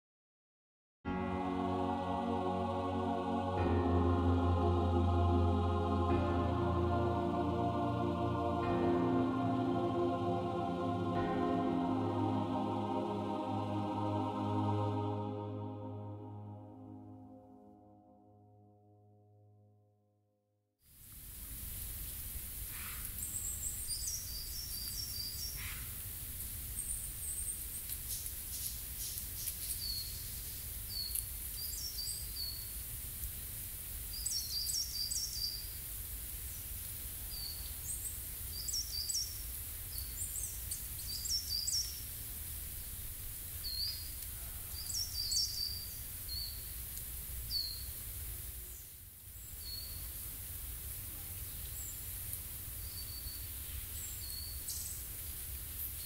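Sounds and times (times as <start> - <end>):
small songbirds chirping: 23.0 - 26.0, 26.6 - 32.9, 34.0 - 48.0, 48.7 - 50.4, 51.4 - 56.0.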